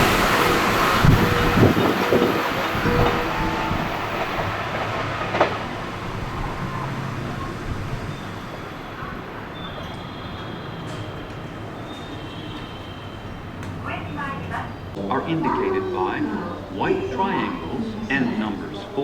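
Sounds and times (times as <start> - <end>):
train wheel clack: 0.0 - 7.5
electric train running past: 0.0 - 19.0.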